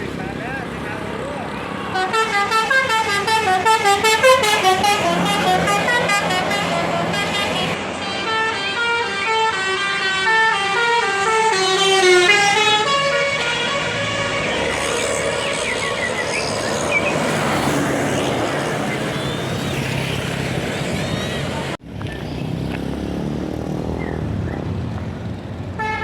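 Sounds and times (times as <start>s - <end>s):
musical bus horn playing tune: 1.8s - 16.6s, 25.8s - 26.0s.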